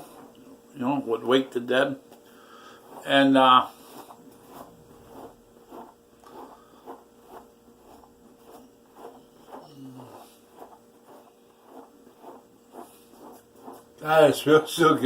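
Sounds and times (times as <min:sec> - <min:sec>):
hairbrush rasping through hair: 0:00.0 - 0:00.4, 0:02.8 - 0:14.0.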